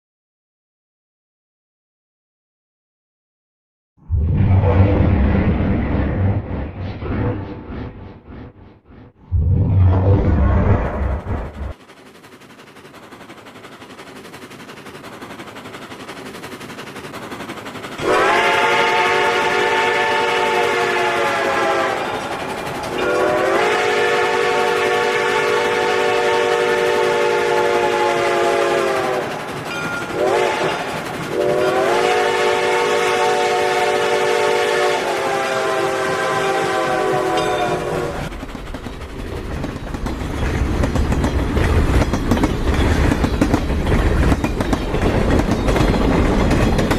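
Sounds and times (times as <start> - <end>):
low boom: 4.1 - 11.8
train rumble: 4.1 - 46.9
multi-note train horn blasts: 18.0 - 29.4, 30.1 - 38.3.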